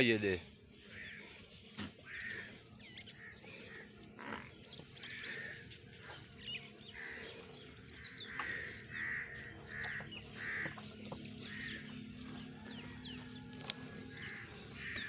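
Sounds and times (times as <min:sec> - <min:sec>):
small birds chirping: 0:00.0 - 0:15.0
crow cawing: 0:00.8 - 0:01.2, 0:02.0 - 0:05.6, 0:07.0 - 0:07.3, 0:08.0 - 0:12.0, 0:12.6 - 0:15.0.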